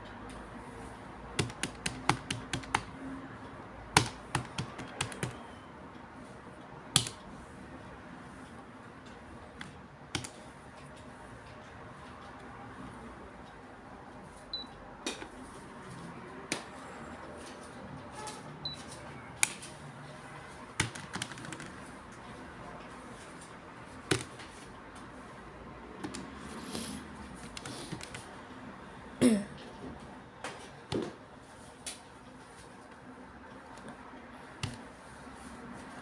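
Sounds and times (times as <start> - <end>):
calculator keys clicking: 1.4 - 3.0, 3.9 - 5.5, 6.9 - 7.3, 9.1 - 11.0, 20.7 - 21.8, 27.4 - 28.3, 34.6 - 34.8.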